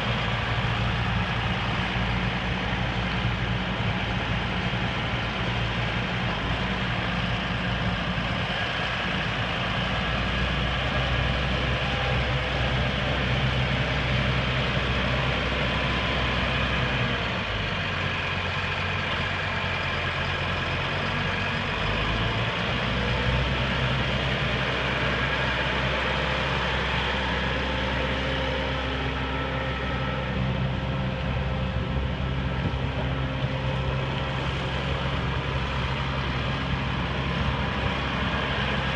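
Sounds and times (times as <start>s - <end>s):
diesel tractor engine idling: 0.0s - 38.9s.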